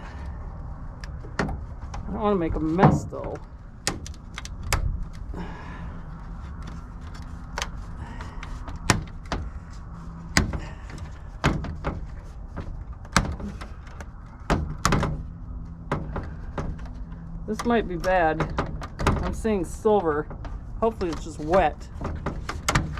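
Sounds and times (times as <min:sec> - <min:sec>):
plastic and metal parts clicking: 0:03.4 - 0:05.3.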